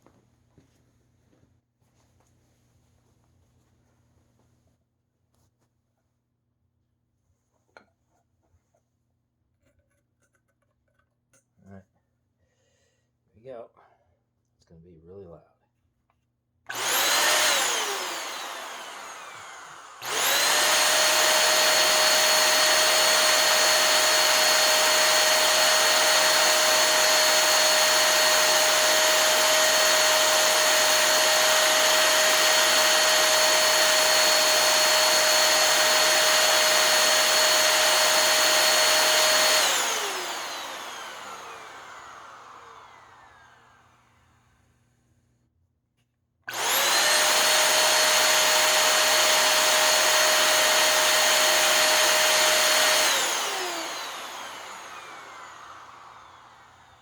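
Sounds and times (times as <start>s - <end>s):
vacuum motor whine: 16.7s - 44.4s, 46.5s - 57.0s.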